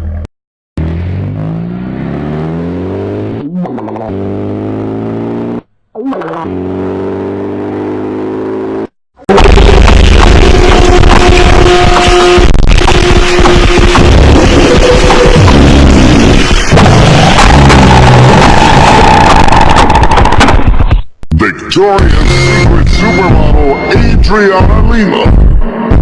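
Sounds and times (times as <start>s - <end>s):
harsh distorted noise blast: 9.3s - 21.0s.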